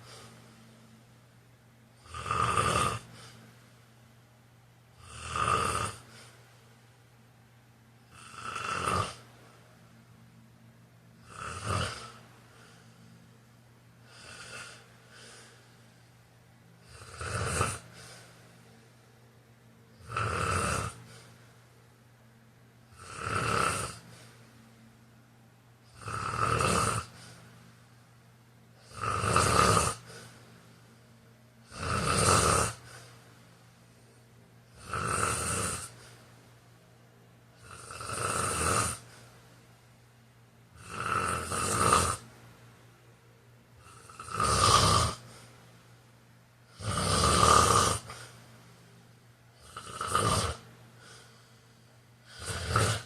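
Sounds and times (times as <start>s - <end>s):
man snoring: 2.0s - 3.4s, 5.0s - 6.3s, 8.0s - 9.3s, 11.2s - 12.2s, 14.0s - 15.6s, 16.8s - 18.2s, 19.9s - 21.3s, 22.9s - 24.1s, 25.9s - 27.4s, 28.8s - 30.4s, 31.6s - 33.1s, 34.7s - 36.2s, 37.6s - 39.2s, 40.8s - 42.2s, 43.8s - 45.4s, 46.7s - 48.3s, 49.6s - 51.3s, 52.2s - 53.0s.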